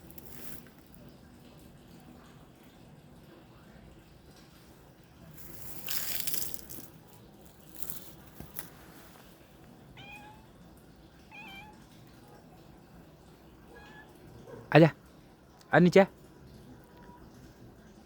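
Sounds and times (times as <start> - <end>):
noisy rustling: 0.0 - 1.0, 5.2 - 9.6
cat meowing: 10.0 - 10.5, 11.3 - 11.8, 13.7 - 14.2.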